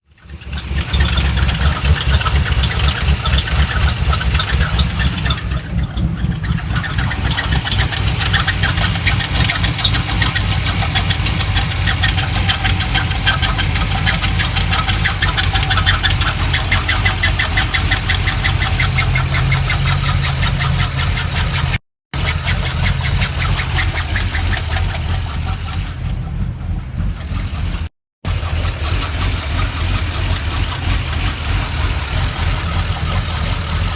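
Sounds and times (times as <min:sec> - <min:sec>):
car engine idling: 0:00.0 - 0:33.9
rapid engine ticking: 0:00.0 - 0:33.9.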